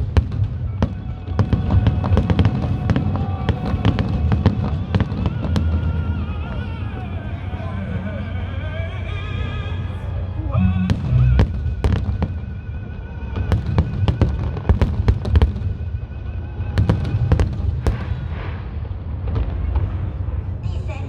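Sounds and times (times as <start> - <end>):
fireworks bangs: 0.0 - 12.6, 16.8 - 21.0
music playing: 0.8 - 11.6.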